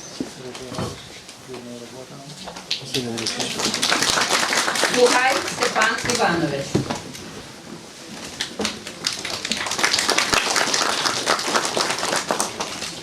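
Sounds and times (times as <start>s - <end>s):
audience applauding: 2.7s - 6.6s, 8.3s - 13.0s.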